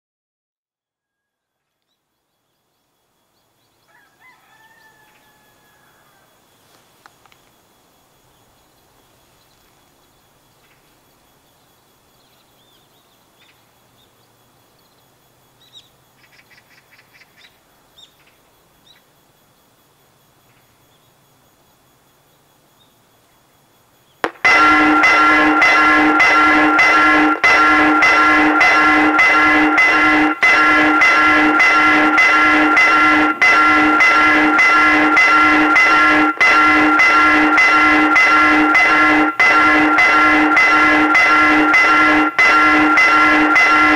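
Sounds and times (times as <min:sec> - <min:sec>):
faint rural background: 0:00.7 - 0:43.9
distant rooster crowing: 0:03.8 - 0:06.4
level-crossing warning bell: 0:24.4 - 0:43.9.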